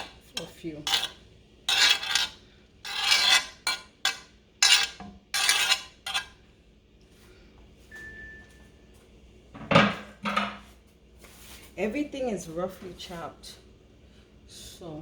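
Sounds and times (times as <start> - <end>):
utensil scraping in a pan: 0.0 - 6.4.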